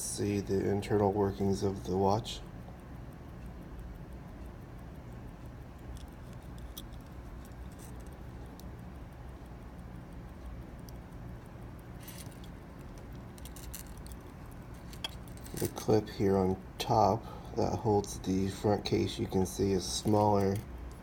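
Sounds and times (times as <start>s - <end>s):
steady low hum: 0.0s - 21.0s
pocket watch clicks and rattles: 2.6s - 16.2s, 18.0s - 21.0s.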